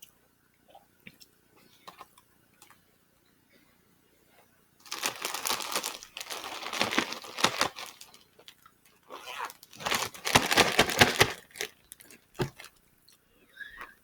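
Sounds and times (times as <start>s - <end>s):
plastic crinkling: 4.8s - 12.8s.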